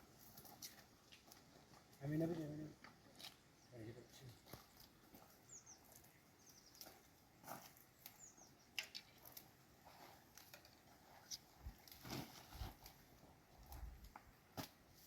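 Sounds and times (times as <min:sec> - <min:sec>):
small bird chirping: 0:03.5 - 0:07.1, 0:08.0 - 0:09.2.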